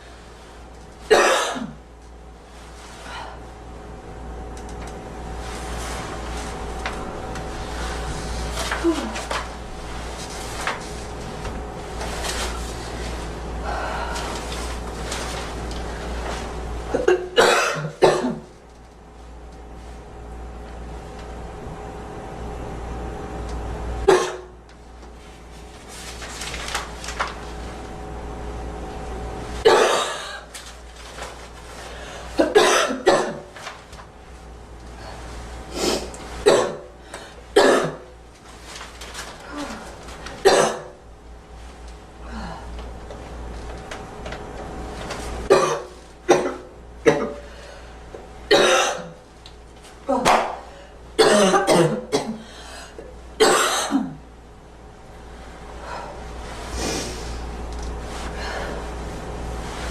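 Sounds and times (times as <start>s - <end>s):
girl coughing: 1.1s - 1.8s, 16.9s - 18.5s, 24.1s - 24.5s, 29.6s - 30.5s, 32.4s - 33.5s, 36.4s - 36.9s, 37.6s - 38.1s, 40.4s - 41.0s, 45.5s - 47.5s, 48.5s - 49.2s, 51.2s - 52.5s, 53.4s - 54.2s.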